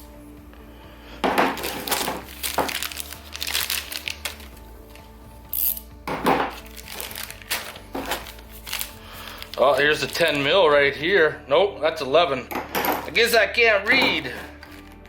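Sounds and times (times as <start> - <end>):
quiet background music: 0.0 - 15.0
metal wrenches clinking: 5.5 - 5.9.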